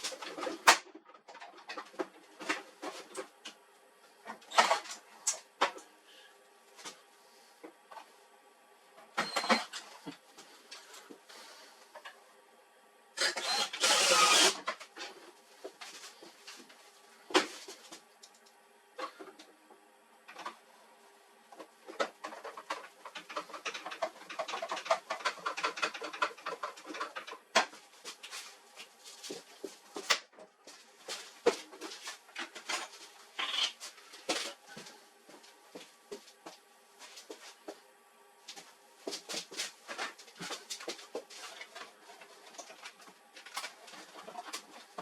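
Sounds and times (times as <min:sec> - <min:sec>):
faint steady hum: 0:00.0 - 0:45.0
laser printer clicking and clattering: 0:22.0 - 0:27.7.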